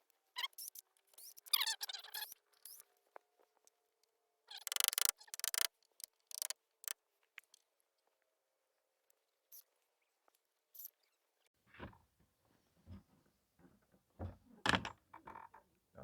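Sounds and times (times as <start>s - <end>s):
short clicks and knocks: 4.6s - 7.0s.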